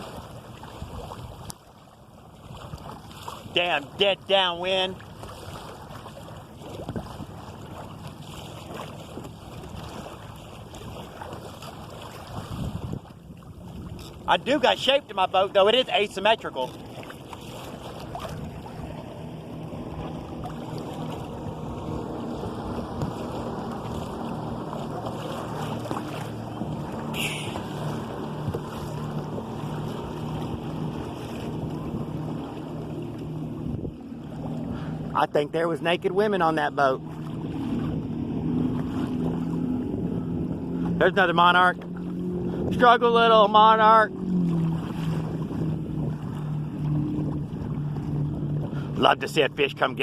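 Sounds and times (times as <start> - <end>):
water washing along hull: 0.0 - 50.0
wind on microphone: 5.2 - 7.9, 8.6 - 14.4, 17.5 - 35.2, 37.1 - 41.0, 41.7 - 43.0, 44.1 - 49.0.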